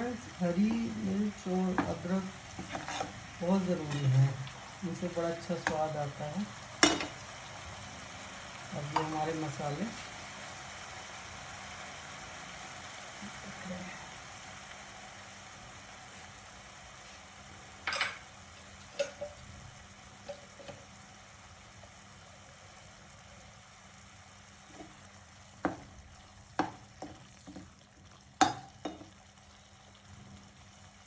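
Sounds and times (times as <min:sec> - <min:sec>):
spices sizzling in oil: 0:00.0 - 0:31.0
spoon clinking against pan: 0:18.9 - 0:19.4.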